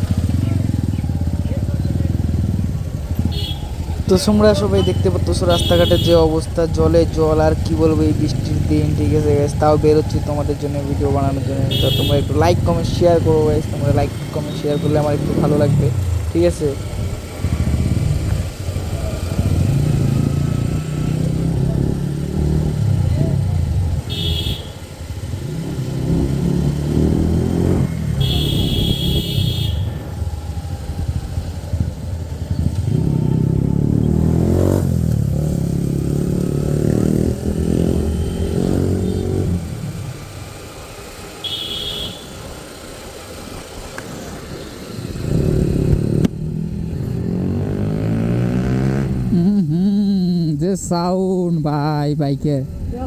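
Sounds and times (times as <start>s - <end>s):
motorcycle engine revving: 0.0s - 50.6s
horn beeping: 3.1s - 6.5s, 11.0s - 16.0s, 23.9s - 24.9s, 27.9s - 30.4s, 37.7s - 39.6s, 41.4s - 42.5s.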